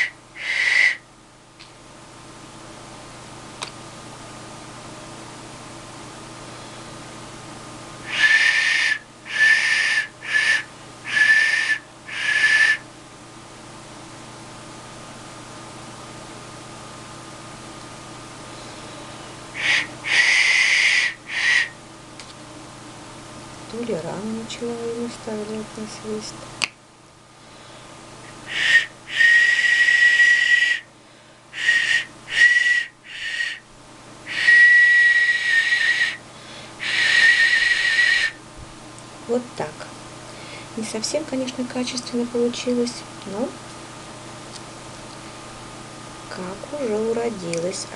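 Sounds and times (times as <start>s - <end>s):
clay whistle blasts: 0.0s - 1.0s, 8.1s - 12.8s, 19.6s - 21.8s, 28.5s - 30.9s, 31.6s - 33.6s, 34.3s - 36.2s, 36.8s - 38.4s.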